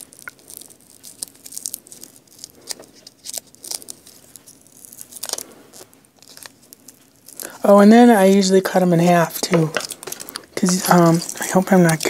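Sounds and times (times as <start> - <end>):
hook-and-loop tape tearing: 0.0 - 8.5, 9.4 - 12.0
paper rustling and crinkling: 0.0 - 12.0.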